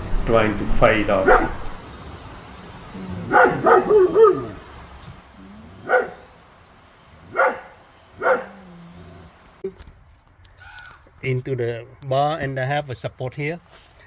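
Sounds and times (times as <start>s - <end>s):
dog barking: 1.1s - 1.8s, 2.9s - 4.8s, 5.6s - 6.4s, 7.2s - 9.3s.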